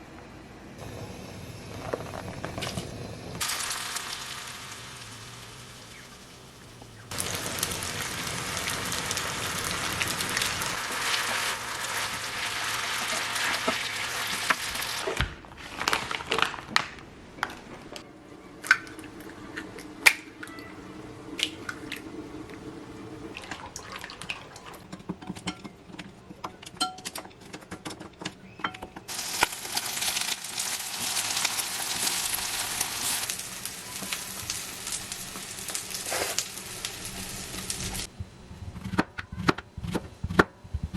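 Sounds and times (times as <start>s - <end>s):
food sizzling in a hot pan: 0.8s - 15.2s, 29.1s - 38.1s.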